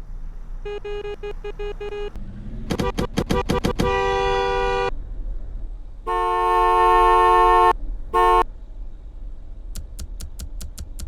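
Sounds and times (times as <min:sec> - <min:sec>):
car horn honking: 0:00.6 - 0:04.9, 0:06.1 - 0:08.4.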